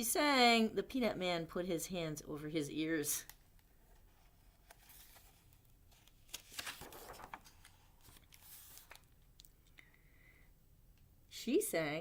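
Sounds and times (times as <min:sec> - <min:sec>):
paper page rustling: 0:03.9 - 0:09.3.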